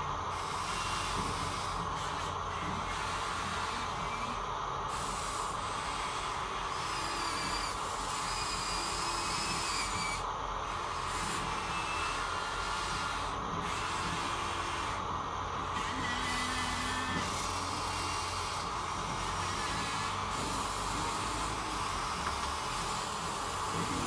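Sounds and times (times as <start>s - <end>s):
small electric motors whirring: 0.0s - 24.0s.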